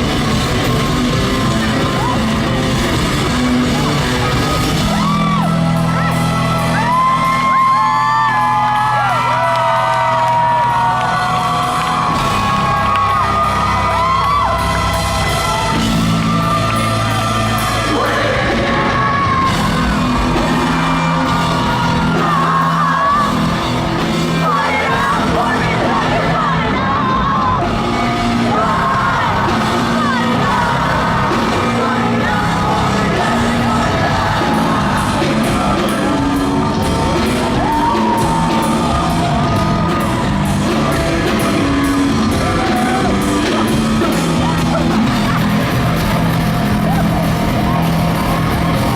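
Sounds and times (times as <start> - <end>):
rock band playing live: 0.0 - 48.9
person singing and yelling: 17.0 - 45.7.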